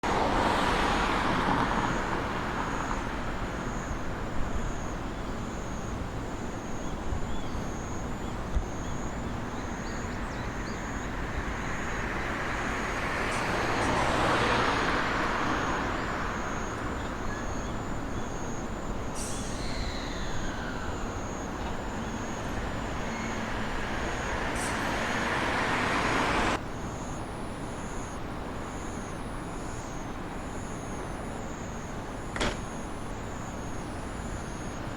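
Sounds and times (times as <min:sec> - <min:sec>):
vehicles passing: 0:00.0 - 0:05.2, 0:09.2 - 0:34.9
faint high chirp: 0:19.2 - 0:23.5.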